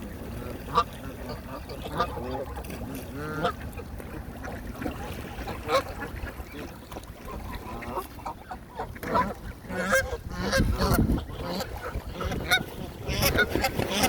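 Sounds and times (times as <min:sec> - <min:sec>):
waterfowl honking: 0:00.3 - 0:14.0.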